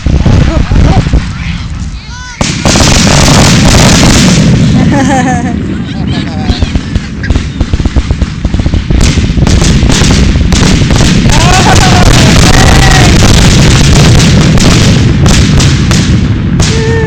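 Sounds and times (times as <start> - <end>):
fireworks booming and crackling: 0.0 - 17.0
low rumble: 0.0 - 17.0
whistling fireworks: 0.0 - 17.0.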